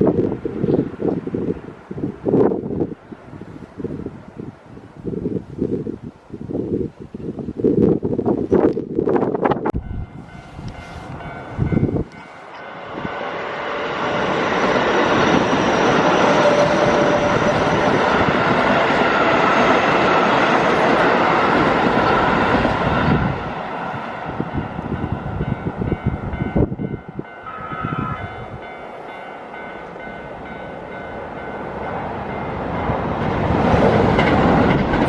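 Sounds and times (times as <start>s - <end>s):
wind buffeting microphone: 0.0s - 35.0s
train wheels rumbling on rails: 7.9s - 35.0s.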